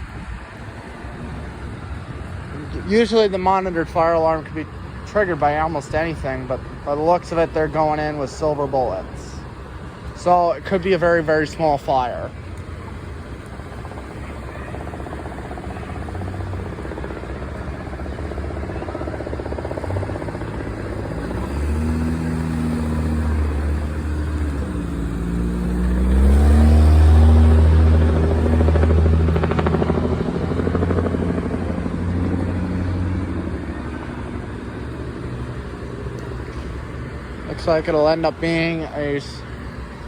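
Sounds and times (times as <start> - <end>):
vehicle engine accelerating: 11.9 - 40.0.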